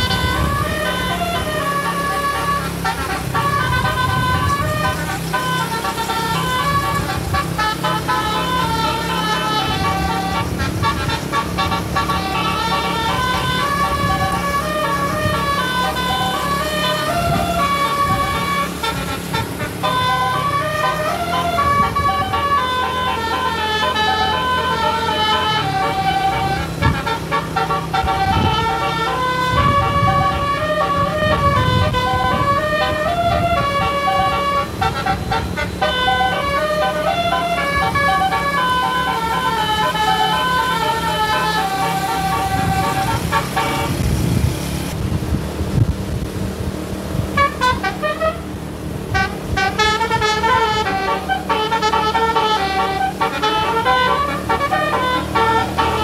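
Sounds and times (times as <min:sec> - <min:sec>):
bus air horn playing a melody: 0:00.0 - 0:45.7, 0:47.1 - 0:56.0
low engine rumble: 0:00.0 - 0:56.0.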